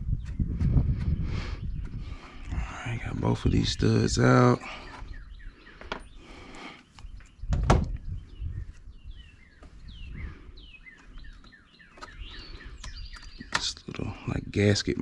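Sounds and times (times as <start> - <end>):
small birds chirping: 0.0 - 15.0.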